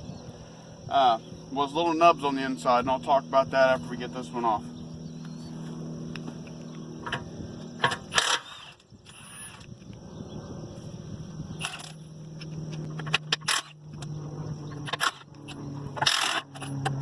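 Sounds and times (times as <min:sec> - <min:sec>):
steady low hum: 0:00.0 - 0:17.0
impact wrench bursts: 0:07.8 - 0:09.7.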